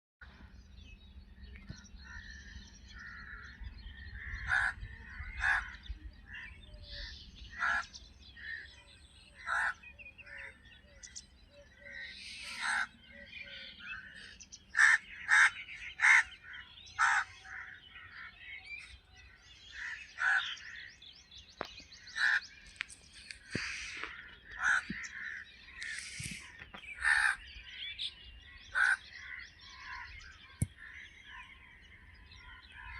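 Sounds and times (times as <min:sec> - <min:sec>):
small birds chirping: 0:00.3 - 0:32.9
crows cawing: 0:02.0 - 0:08.7, 0:09.4 - 0:11.1, 0:11.8 - 0:18.4, 0:19.2 - 0:21.0, 0:22.1 - 0:27.5, 0:28.6 - 0:31.4.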